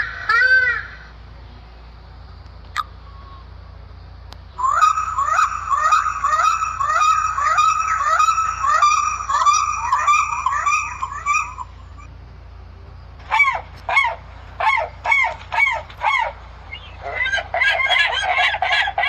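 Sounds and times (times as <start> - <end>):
bird calling rapidly: 0.0 - 1.2, 4.4 - 12.2, 13.2 - 19.0.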